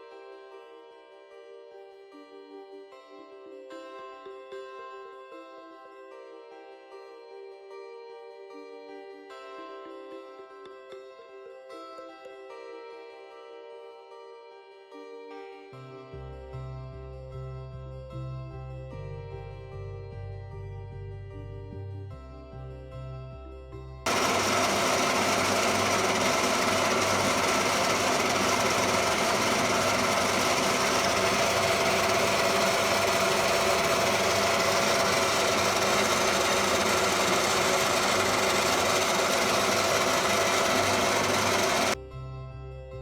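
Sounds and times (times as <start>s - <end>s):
power tool on metal: 24.1s - 42.0s.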